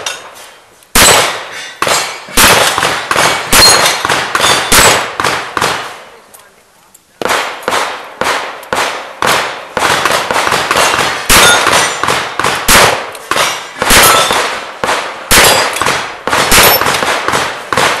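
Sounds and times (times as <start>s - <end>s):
steel targets clanging: 0.0s - 0.6s, 3.5s - 4.9s, 10.8s - 12.0s, 13.3s - 14.5s
handgun shots with echo: 1.0s - 6.0s, 7.2s - 18.0s.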